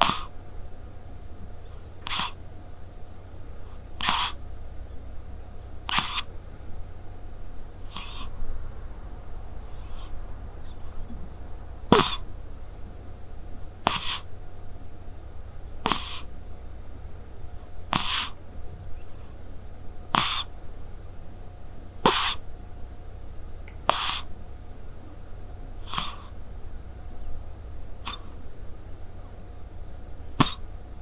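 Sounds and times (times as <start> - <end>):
cat snoring: 0.0 - 0.3, 2.0 - 2.4, 4.0 - 4.4, 5.9 - 6.3, 7.8 - 12.4, 13.8 - 14.3, 15.8 - 16.3, 17.9 - 18.4, 20.1 - 20.5, 22.0 - 22.4, 23.9 - 24.3, 25.8 - 26.3, 28.0 - 28.3, 30.4 - 30.6.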